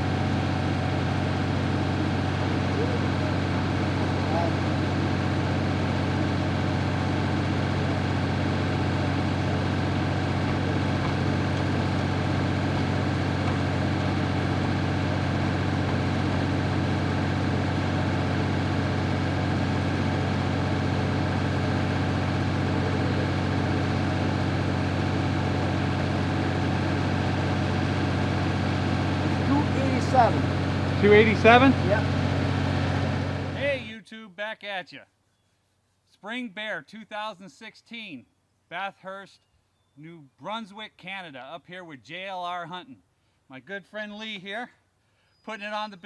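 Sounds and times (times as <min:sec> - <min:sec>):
vehicle engine humming: 0:00.0 - 0:33.9.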